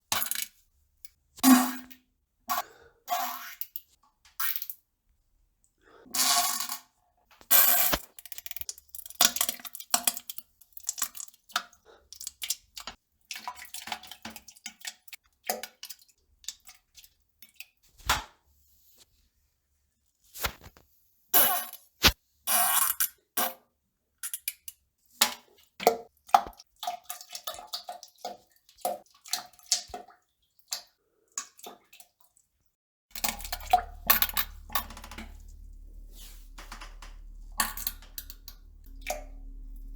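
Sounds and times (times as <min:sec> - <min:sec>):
low hum: 0:33.1 - 0:39.9.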